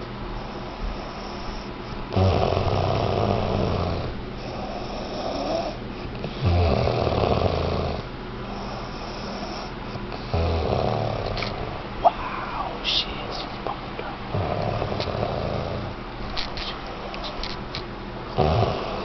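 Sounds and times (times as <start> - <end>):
person snoring: 1.0 - 8.0, 14.3 - 15.9, 18.4 - 19.0
quiet breathing: 8.4 - 10.4.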